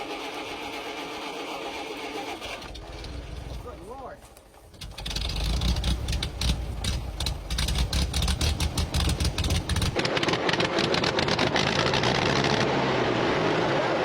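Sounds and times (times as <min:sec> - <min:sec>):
engine running roughly: 0:04.8 - 0:12.7.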